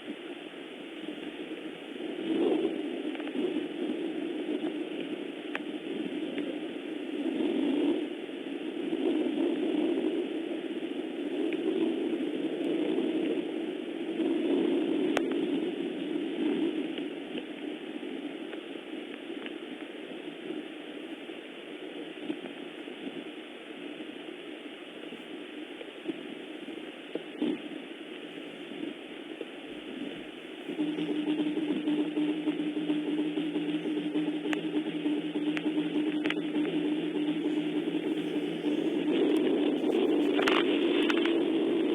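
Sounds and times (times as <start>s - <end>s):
steady rain falling: 17.0s - 41.9s.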